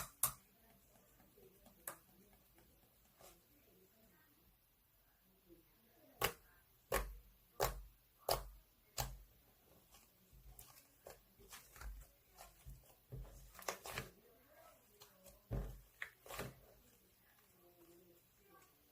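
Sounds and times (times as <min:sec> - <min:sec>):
sticky slime popping and squelching: 0:06.2 - 0:09.3.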